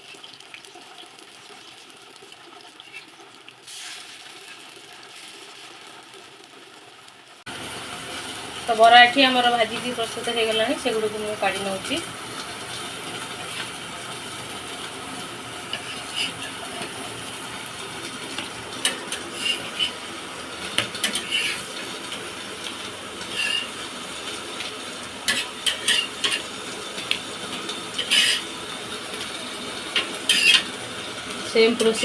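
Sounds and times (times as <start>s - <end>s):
hot oil sizzling: 0.0s - 32.0s
metal utensil scraping pan: 15.7s - 17.0s, 18.8s - 20.0s, 20.8s - 21.7s, 23.2s - 23.8s, 25.3s - 26.5s, 28.0s - 28.5s, 30.0s - 30.7s.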